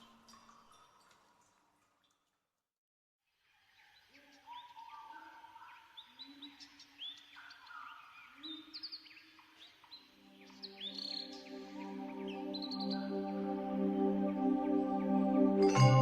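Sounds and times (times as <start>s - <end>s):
high chirping bird-like notes: 9.9s - 16.0s
soft ambient music: 9.9s - 16.0s.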